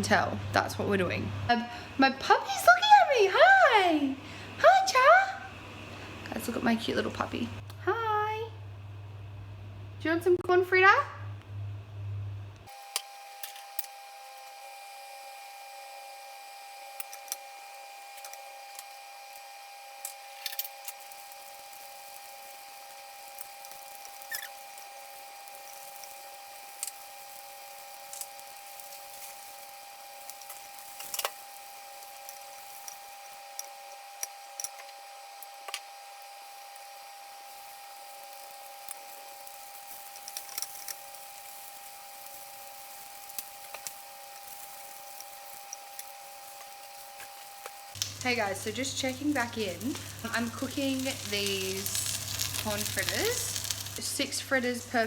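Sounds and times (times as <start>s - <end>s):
fritters sizzling in a pan: 12.7s - 54.0s
sharp pops and crackles: 22.9s - 29.6s, 43.2s - 54.0s.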